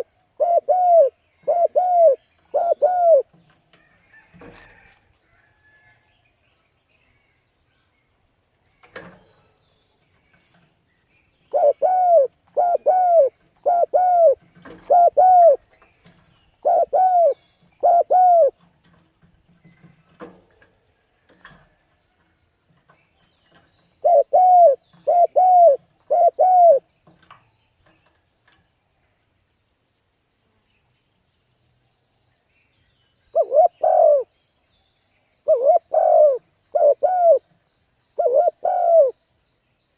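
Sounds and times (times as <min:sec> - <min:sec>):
dove cooing: 0:00.0 - 0:03.4, 0:11.5 - 0:15.6, 0:16.6 - 0:18.6, 0:24.0 - 0:26.8, 0:33.3 - 0:34.3, 0:35.5 - 0:37.5, 0:38.2 - 0:39.2.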